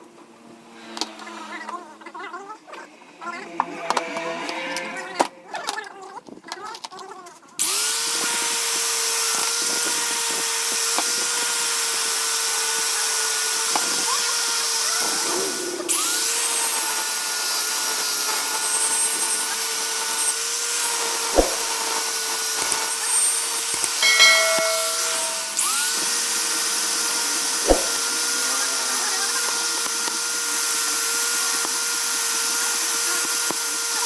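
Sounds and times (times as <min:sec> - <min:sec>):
sharp knocks: 0:24.0 - 0:25.7.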